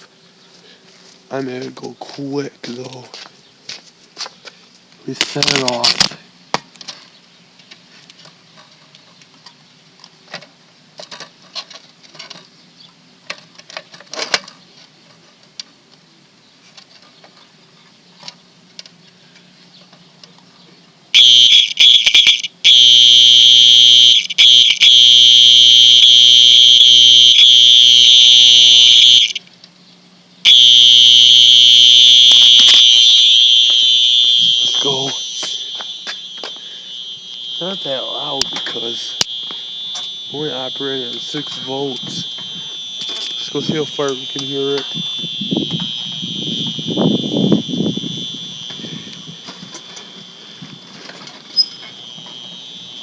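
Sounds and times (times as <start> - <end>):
loud high alarm tone: 21.2 - 29.4, 30.5 - 53.0.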